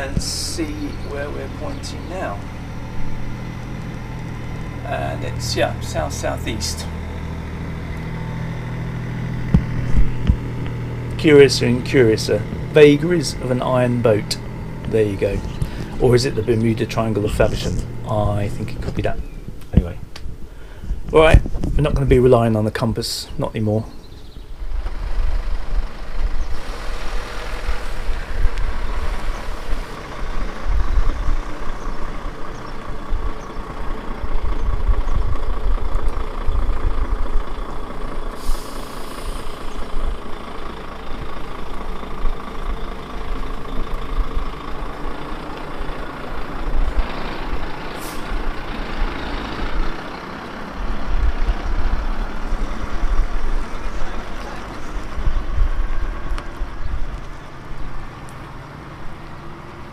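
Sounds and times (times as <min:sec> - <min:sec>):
heavy vehicle engine running: 0:00.0 - 0:22.9, 0:23.5 - 0:59.9
short hiss: 0:38.4 - 0:39.7, 0:47.9 - 0:48.3.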